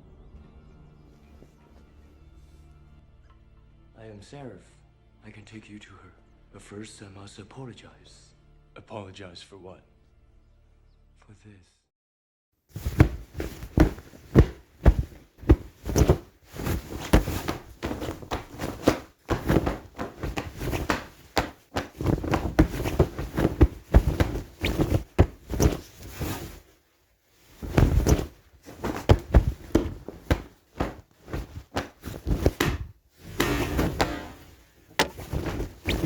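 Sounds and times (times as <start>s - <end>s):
cloth snapping and swishing: 12.7s - 26.8s, 27.4s - 36.0s
punches and hits: 12.8s - 26.6s, 27.6s - 36.0s.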